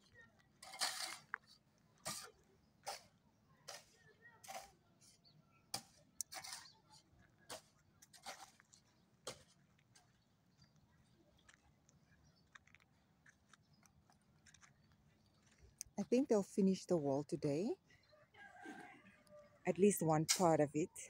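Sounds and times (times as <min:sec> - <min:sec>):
faint crunching scrapes and clicks: 0:00.0 - 0:16.0.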